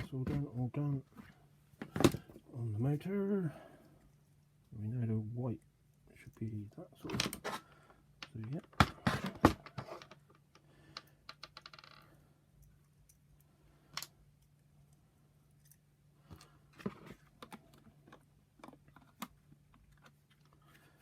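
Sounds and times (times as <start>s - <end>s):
faint low hum: 0.0s - 11.3s.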